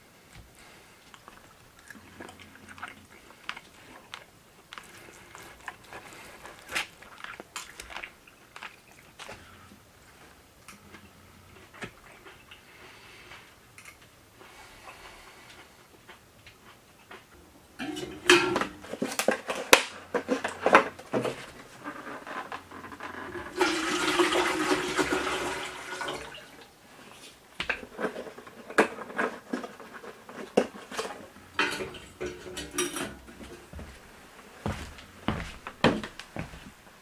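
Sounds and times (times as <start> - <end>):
objects knocking and clattering: 17.8 - 25.3, 27.6 - 33.7
running water: 22.9 - 26.8.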